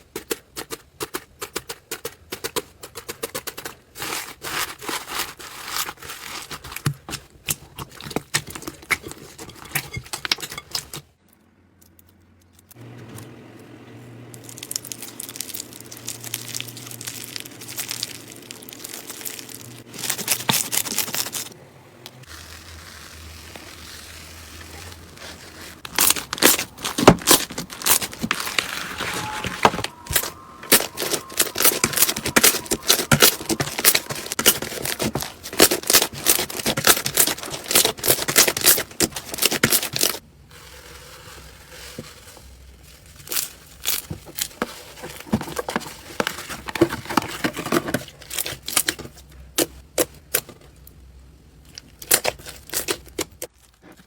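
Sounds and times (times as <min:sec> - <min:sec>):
slime crackling and popping: 0:14.4 - 0:21.5, 0:22.2 - 0:40.2.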